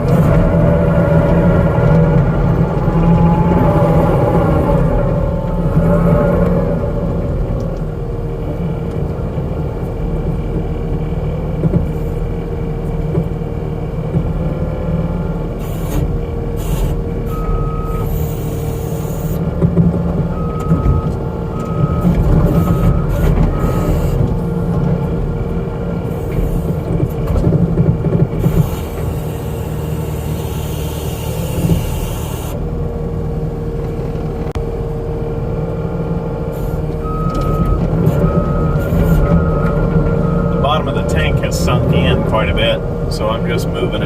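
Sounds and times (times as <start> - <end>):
diesel engine running: 0.0 - 44.0
backup alarm beeps: 20.3 - 24.2, 37.0 - 42.2.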